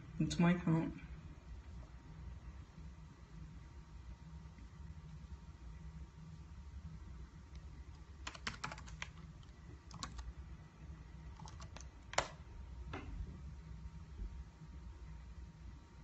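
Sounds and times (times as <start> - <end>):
laptop keyboard typing: 7.9 - 10.3, 11.2 - 12.4.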